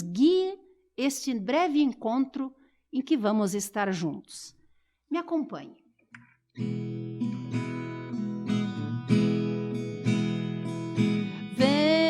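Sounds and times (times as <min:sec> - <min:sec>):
acoustic guitar strumming chords: 0:06.6 - 0:12.0.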